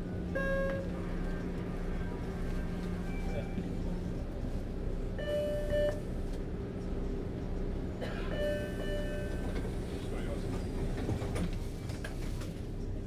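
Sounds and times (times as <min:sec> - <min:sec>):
subway train rumbling: 0:00.0 - 0:13.0.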